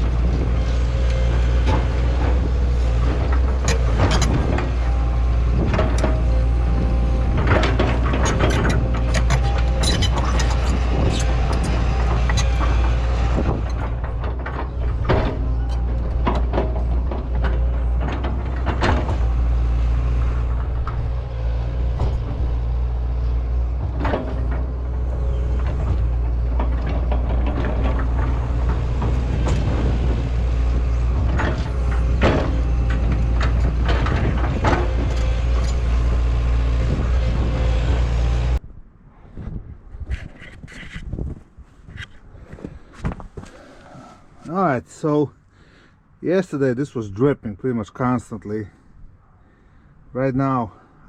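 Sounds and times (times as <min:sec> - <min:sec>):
metallic clanks and knocks: 0:00.0 - 0:38.5
excavator diesel engine: 0:00.0 - 0:38.6.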